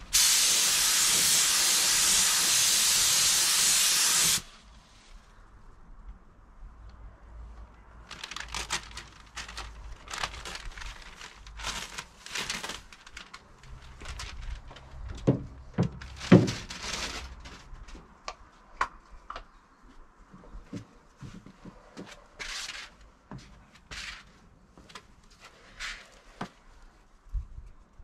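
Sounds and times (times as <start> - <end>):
sheet material crinkling: 8.0 - 15.1, 15.9 - 18.0.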